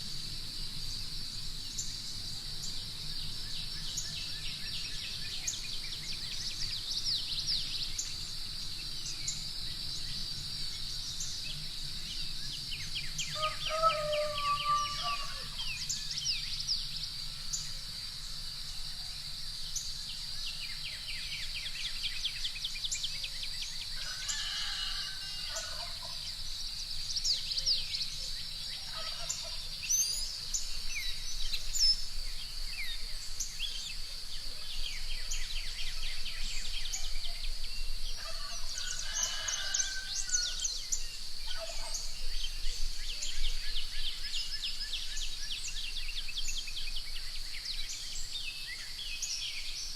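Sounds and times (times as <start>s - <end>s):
distant domestic fowl calling: 13.3s - 15.7s, 28.8s - 29.7s.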